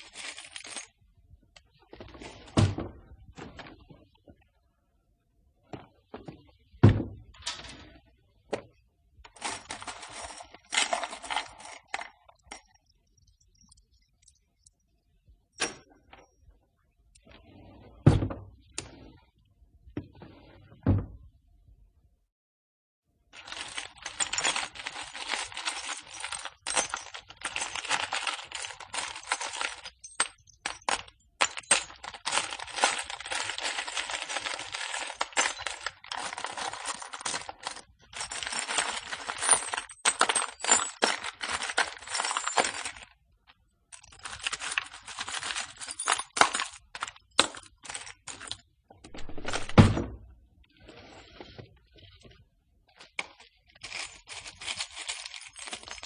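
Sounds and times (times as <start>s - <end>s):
screws and nails clinking: 0.0s - 1.0s, 9.3s - 14.8s, 23.4s - 43.2s, 43.9s - 49.4s, 53.0s - 56.0s.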